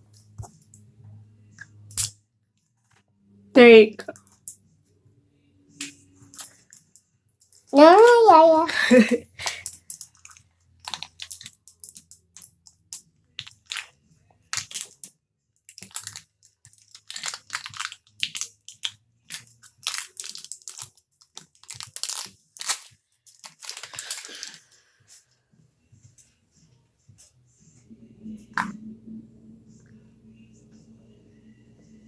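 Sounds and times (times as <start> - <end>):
plastic packaging crinkling: 15.7 - 24.7.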